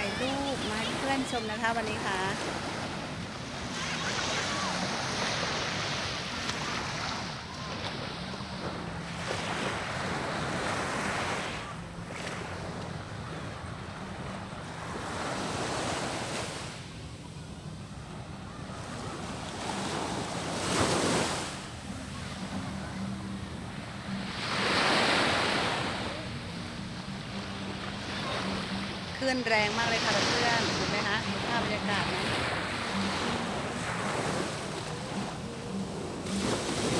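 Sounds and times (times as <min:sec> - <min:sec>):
surf breaking on beach: 0:03.6 - 0:08.0.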